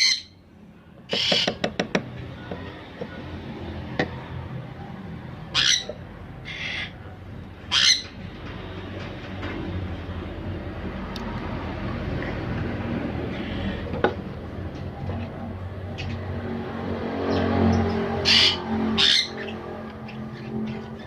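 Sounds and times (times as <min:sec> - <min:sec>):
parrot squawking: 0:00.0 - 0:00.4, 0:01.1 - 0:01.6, 0:05.4 - 0:07.0, 0:07.6 - 0:08.2, 0:18.2 - 0:21.0.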